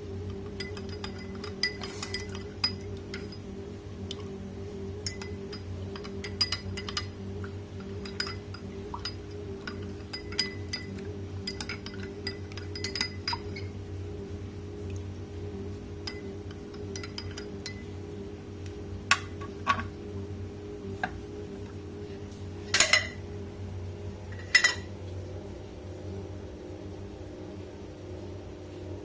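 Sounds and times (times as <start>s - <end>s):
steady low hum: 0.0s - 29.0s
metal spoon clinking on pot: 0.6s - 3.4s, 5.0s - 7.2s, 7.8s - 13.7s, 16.1s - 17.8s.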